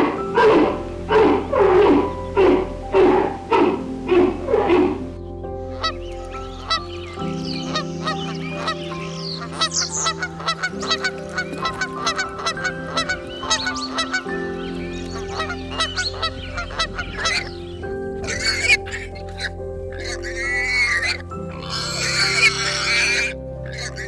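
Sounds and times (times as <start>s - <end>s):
soft music of sustained chords: 0.0s - 24.0s
fowl calling: 5.7s - 24.0s.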